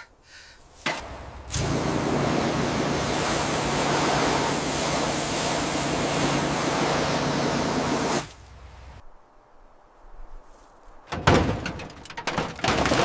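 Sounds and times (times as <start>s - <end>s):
loud rushing hiss: 1.0s - 9.0s.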